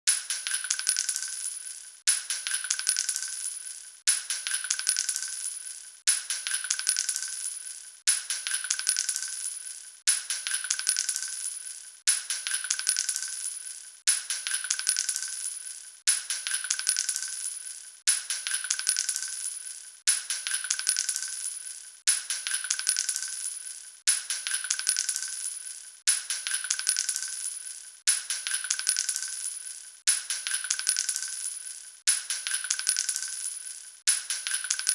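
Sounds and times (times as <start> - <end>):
metal capsules clinking on floor: 0.1 - 34.9.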